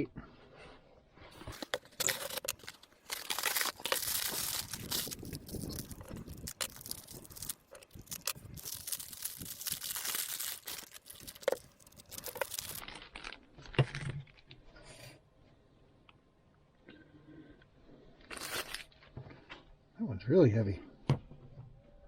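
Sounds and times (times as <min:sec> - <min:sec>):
packaging crinkling and rustling: 0:01.4 - 0:14.5.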